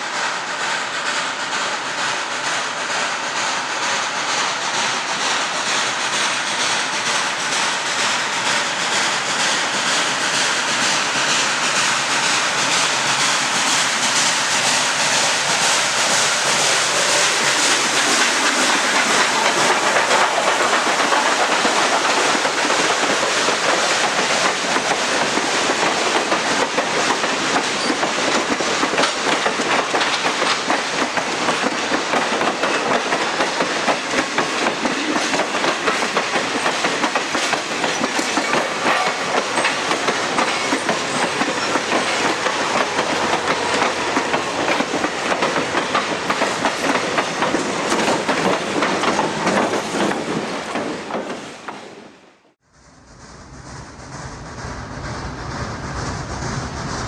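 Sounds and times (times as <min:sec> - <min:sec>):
train wheels clicking over rail joints: 0:00.0 - 0:52.2.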